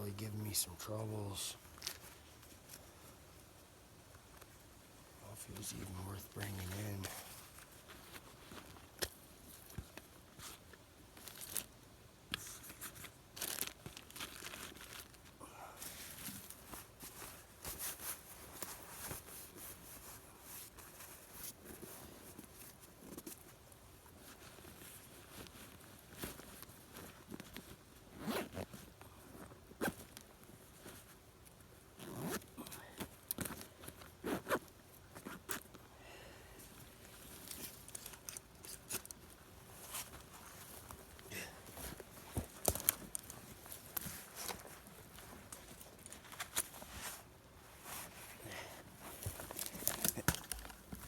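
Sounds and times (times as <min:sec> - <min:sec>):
rustling and crinkling: 0:00.8 - 0:35.9, 0:36.6 - 0:51.0
zipper rasping: 0:28.1 - 0:28.7, 0:32.0 - 0:32.5, 0:34.2 - 0:34.6.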